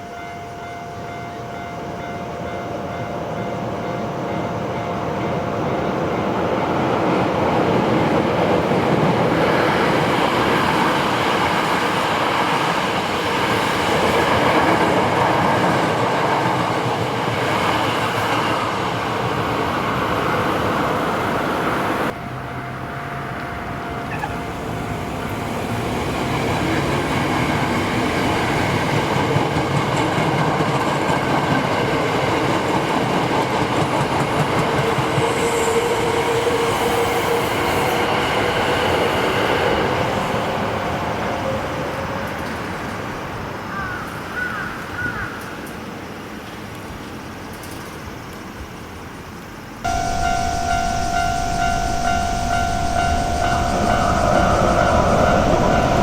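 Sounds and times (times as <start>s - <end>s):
train wheels clattering over rails: 24.9s - 36.6s.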